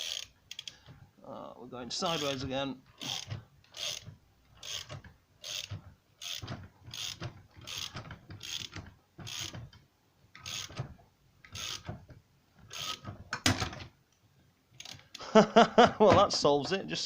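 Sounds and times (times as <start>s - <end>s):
ratchet wrench clicking: 0.0s - 0.8s, 2.1s - 2.4s, 3.0s - 9.6s, 10.4s - 10.8s, 11.5s - 11.9s, 12.7s - 13.0s, 14.8s - 15.2s.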